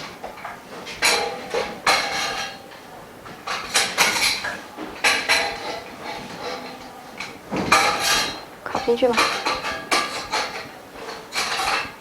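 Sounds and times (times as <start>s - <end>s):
frame parts clattering and clinking: 0.0s - 12.0s
knocks and rattles: 3.2s - 12.0s.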